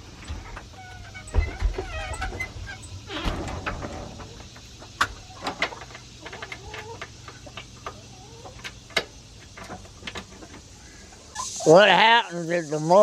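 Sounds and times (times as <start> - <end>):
sharp clicks and knocks: 0.0 - 10.7
hens clucking softly: 4.1 - 11.7.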